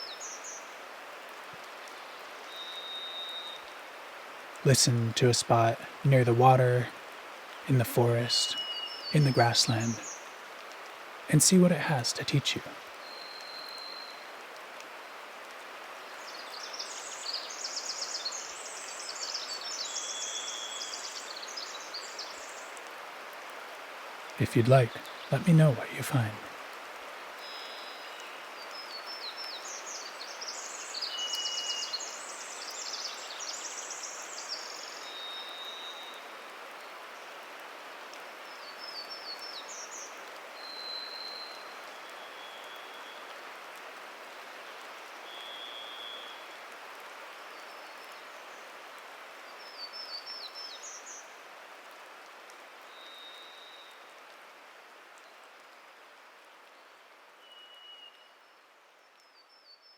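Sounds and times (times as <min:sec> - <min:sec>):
dripping rainwater hiss: 0:00.0 - 0:59.9
buzzy warbler song: 0:07.7 - 0:10.3.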